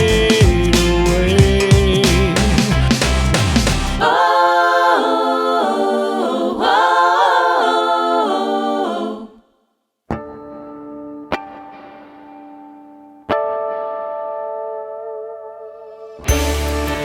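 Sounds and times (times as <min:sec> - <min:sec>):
a cappella choir singing: 0:00.0 - 0:09.6
music with sustained tones: 0:16.1 - 0:17.0.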